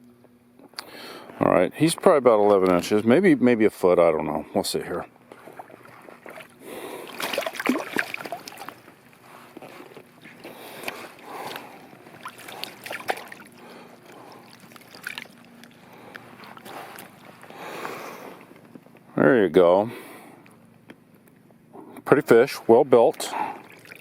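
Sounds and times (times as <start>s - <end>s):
water sloshing and splashing: 5.3s - 18.4s, 23.1s - 24.0s.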